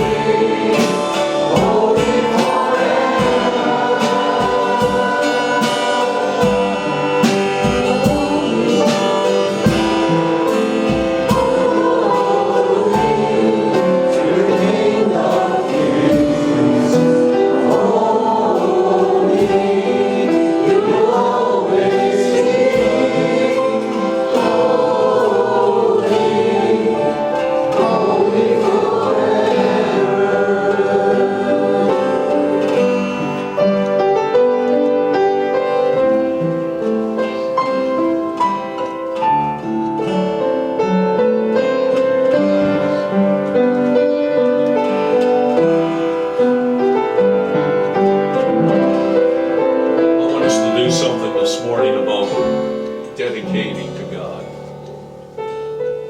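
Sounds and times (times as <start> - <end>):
band with steady beat: 0.0 - 41.0
choir singing: 0.0 - 55.8.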